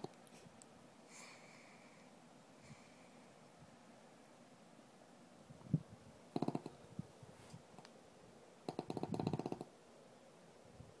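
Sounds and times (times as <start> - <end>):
pet snoring: 6.4 - 6.8, 8.7 - 9.7.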